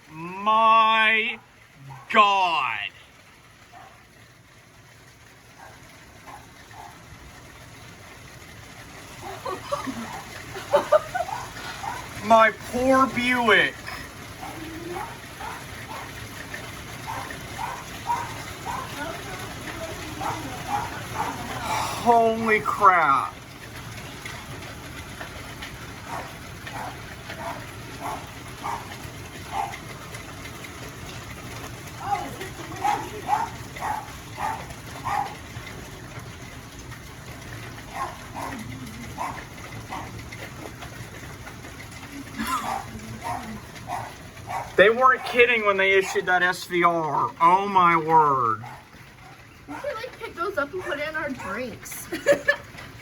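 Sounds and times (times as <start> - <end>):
hail and heavy rain pattering: 0.0 - 53.0
dog barking: 3.7 - 4.0, 5.6 - 7.0, 11.2 - 12.2, 14.4 - 16.2, 17.0 - 19.2, 20.0 - 21.6, 26.0 - 29.8, 32.0 - 35.4, 37.9 - 40.2, 42.6 - 45.4, 48.6 - 50.0, 50.8 - 51.6.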